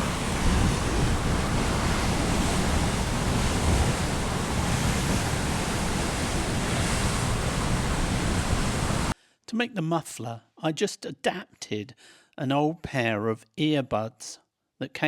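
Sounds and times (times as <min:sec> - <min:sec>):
wind buffeting microphone: 0:00.0 - 0:09.2.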